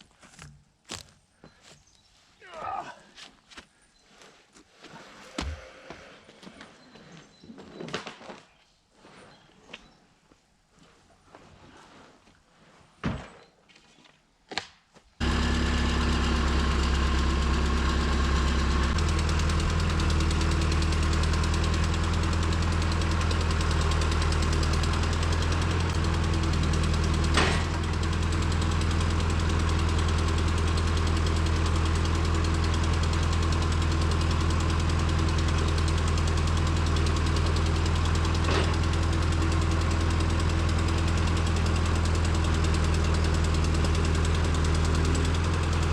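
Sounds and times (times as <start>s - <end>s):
engine running: 15.2s - 45.9s.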